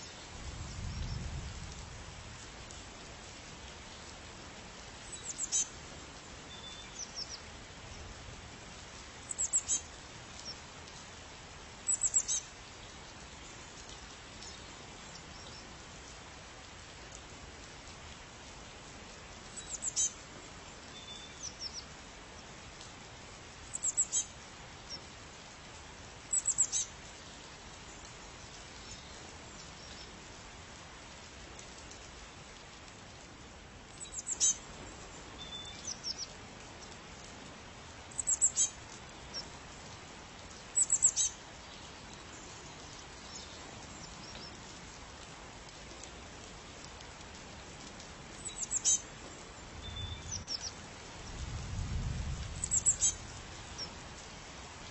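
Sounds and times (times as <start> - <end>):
small bird chirping: 5.1 - 5.7, 9.3 - 10.6, 11.9 - 12.5, 26.3 - 26.9, 34.0 - 34.6, 35.4 - 36.3, 38.1 - 38.7, 40.8 - 41.4, 48.4 - 49.0, 49.8 - 50.8, 52.6 - 53.2.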